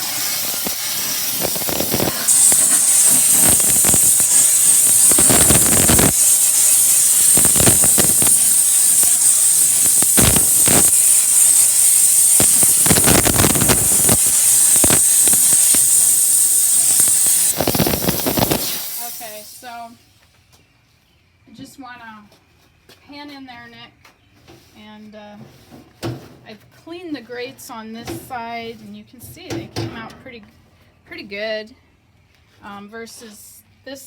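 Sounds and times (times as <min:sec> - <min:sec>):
steam cleaner hissing: 0:00.0 - 0:19.8.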